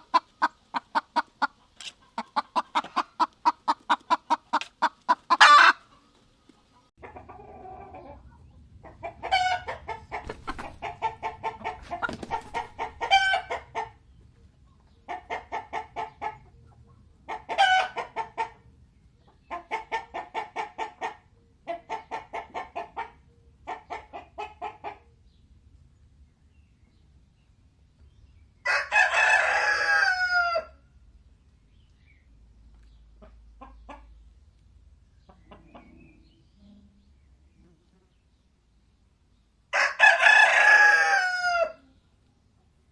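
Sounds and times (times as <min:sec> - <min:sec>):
chicken clucking: 0:00.0 - 0:25.3, 0:32.7 - 0:36.6.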